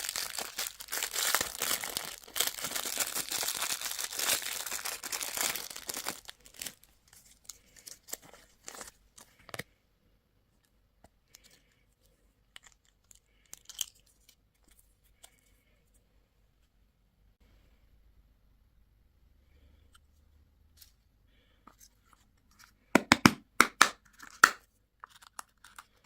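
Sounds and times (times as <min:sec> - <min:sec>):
packaging wrapper crinkling: 0:00.0 - 0:09.4, 0:12.6 - 0:14.7.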